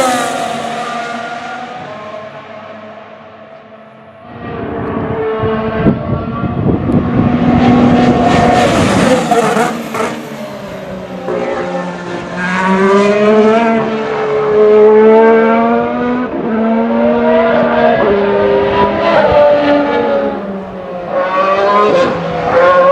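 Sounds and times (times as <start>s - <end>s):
loud rushing car pass: 0.0s - 16.1s
racing car engine at speed: 0.0s - 22.9s.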